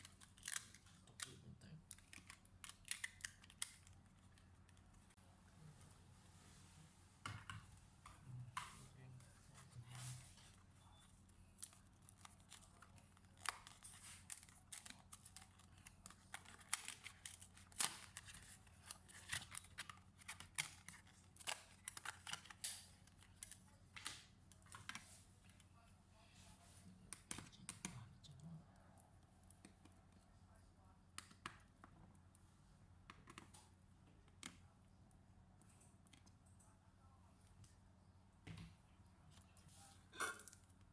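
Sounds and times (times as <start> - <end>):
faint low hum: 0.0 - 40.9
small clicks and taps: 35.6 - 36.7.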